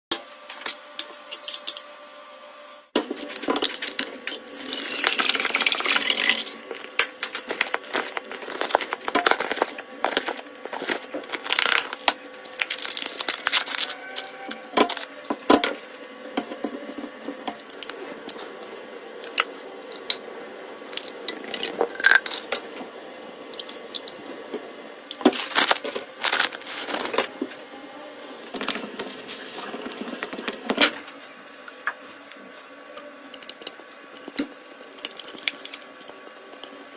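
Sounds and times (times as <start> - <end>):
utensils and containers clinking: 3.1 - 18.4.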